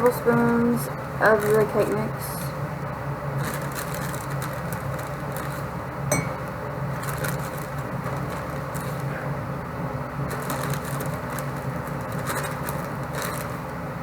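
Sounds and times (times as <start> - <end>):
spoon scooping dry cake mix: 3.4 - 9.2
ringing clink: 6.1 - 6.4.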